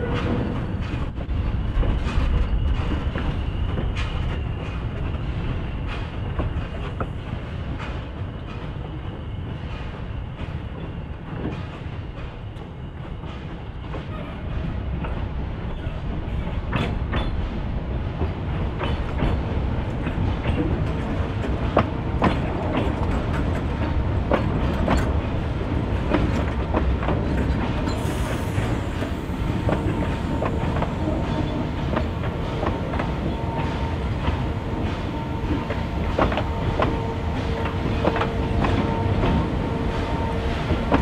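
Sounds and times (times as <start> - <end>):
steam train rumbling: 0.0 - 41.0.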